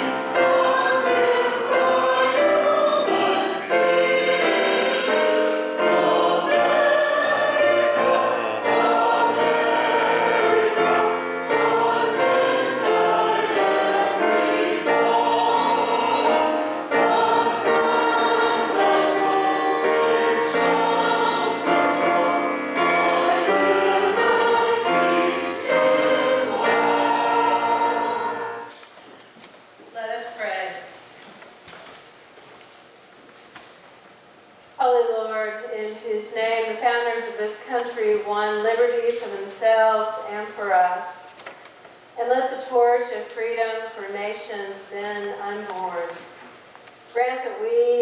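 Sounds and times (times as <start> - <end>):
choir singing a hymn: 0.0 - 28.8.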